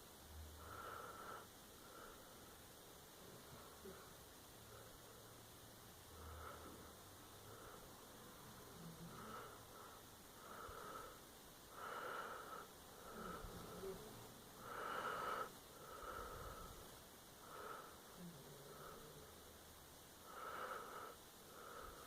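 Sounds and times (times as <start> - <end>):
faint snoring: 0.4 - 5.3, 6.0 - 19.6, 20.2 - 22.0.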